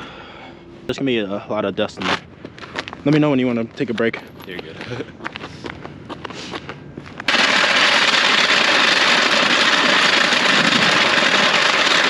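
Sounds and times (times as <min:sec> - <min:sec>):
power tool air rush: 0:07.3 - 0:12.0.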